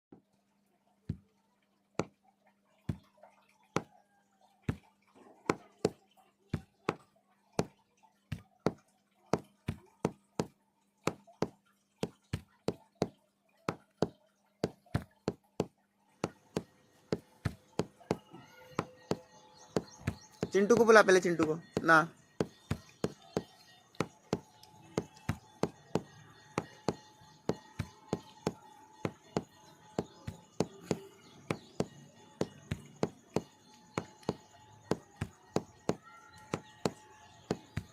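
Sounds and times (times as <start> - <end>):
sharp knocks: 11.1 - 13.1, 13.7 - 20.9, 21.6 - 37.9.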